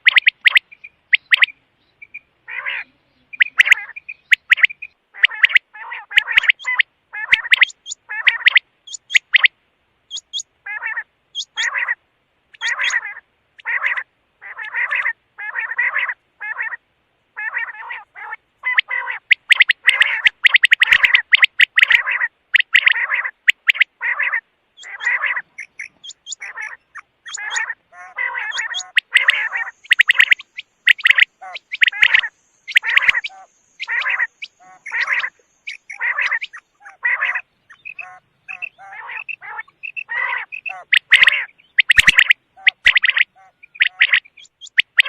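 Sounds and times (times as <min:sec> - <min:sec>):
thin high chirps: 0:00.0 - 0:02.3, 0:03.3 - 0:05.6, 0:07.4 - 0:09.5, 0:10.1 - 0:10.5, 0:24.8 - 0:45.0
quail calling in rapid bursts: 0:00.0 - 0:45.0.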